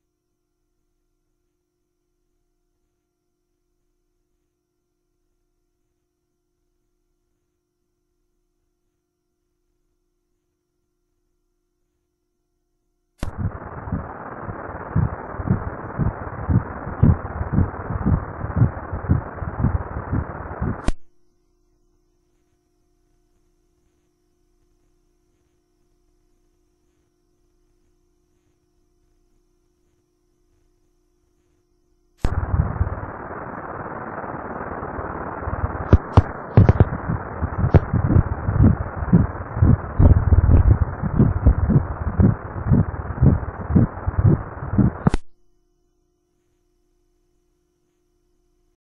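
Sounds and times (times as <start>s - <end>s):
fetal heartbeat on doppler: 13.2s - 20.9s, 32.3s - 33.7s, 34.9s - 45.2s
sharp clicks: 32.2s - 45.3s.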